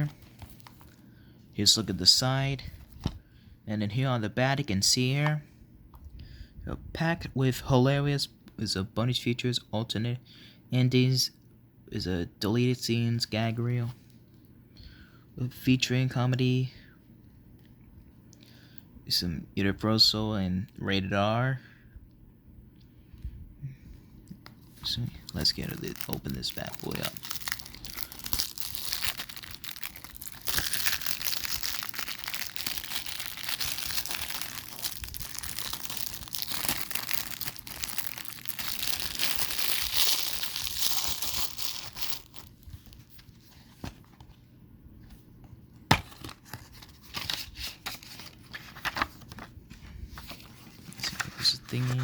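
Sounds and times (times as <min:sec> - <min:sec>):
plastic wrap tearing and crinkling: 0:25.3 - 0:43.3.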